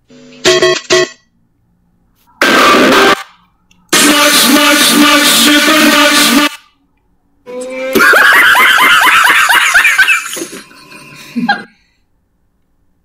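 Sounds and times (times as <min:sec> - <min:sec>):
person laughing: 0:07.9 - 0:11.8.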